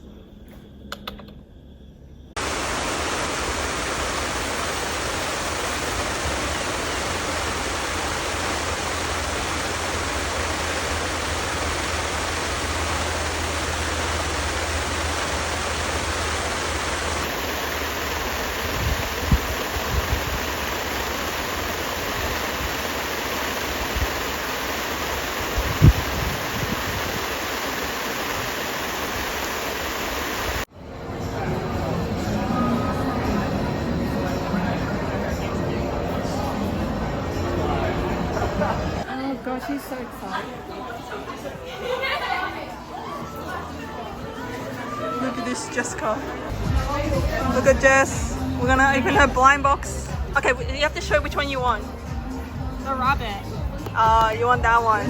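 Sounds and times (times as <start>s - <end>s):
rain falling: 2.4s - 31.2s.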